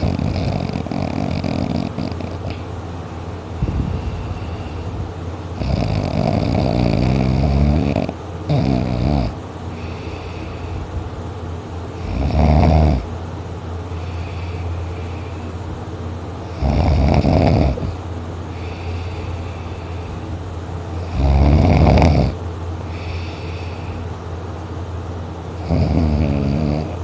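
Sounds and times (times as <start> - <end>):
heavy snoring: 0.0 - 2.6, 5.6 - 10.8, 12.0 - 13.1, 16.5 - 18.0, 21.0 - 24.0, 25.6 - 27.0
noisy breaths: 0.0 - 27.0.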